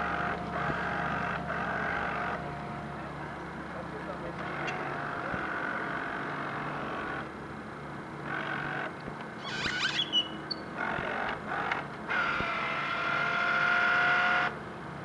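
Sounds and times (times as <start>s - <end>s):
model boat motor whining: 0.0s - 7.4s, 10.8s - 14.7s
high chirps: 9.4s - 10.7s.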